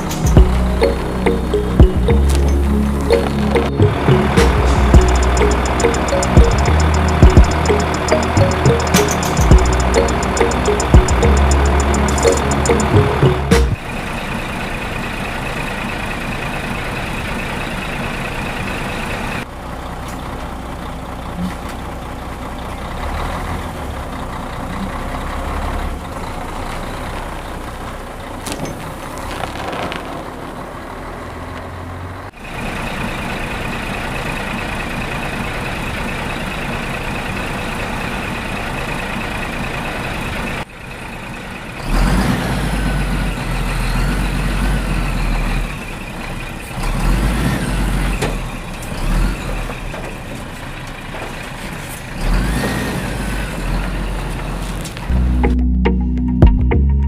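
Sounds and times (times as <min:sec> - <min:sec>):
heavy vehicle engine running: 0:00.0 - 0:56.3.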